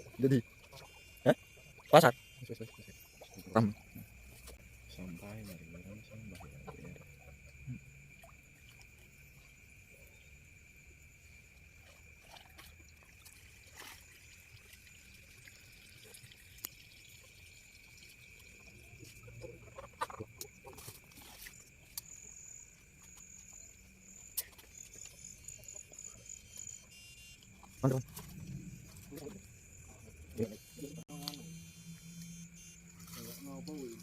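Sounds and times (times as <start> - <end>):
frogs calling: 0.0 - 34.0
insects droning: 0.0 - 34.0
pulsing high trill: 26.8 - 34.0.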